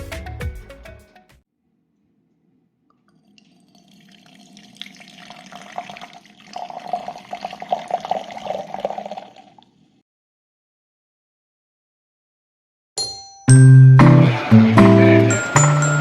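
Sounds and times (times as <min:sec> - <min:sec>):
tap water running and splashing: 0:03.2 - 0:09.6.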